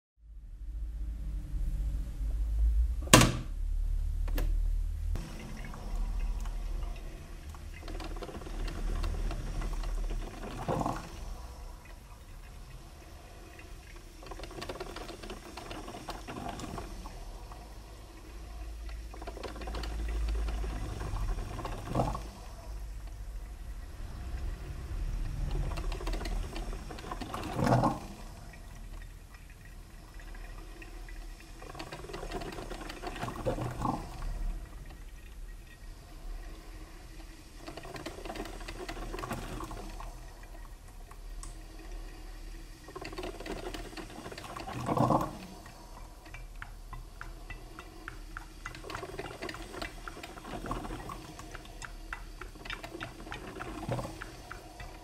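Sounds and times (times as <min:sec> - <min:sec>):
low hum: 0:00.2 - 0:14.2, 0:16.7 - 0:32.1
coffee maker gurgling: 0:05.1 - 0:55.0.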